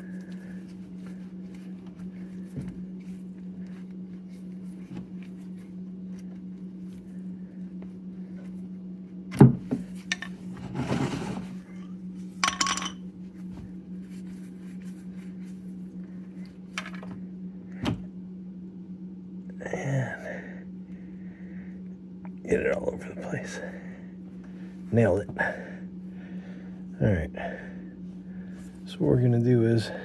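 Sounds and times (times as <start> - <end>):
low hum: 0.0 - 30.0
metal scrape: 10.6 - 11.6
metal tools clinking: 12.4 - 13.0.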